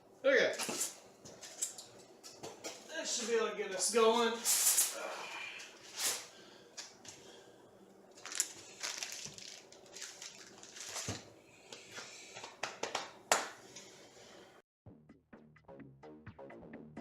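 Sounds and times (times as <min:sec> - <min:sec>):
packaging crinkling and rustling: 0:08.1 - 0:11.3.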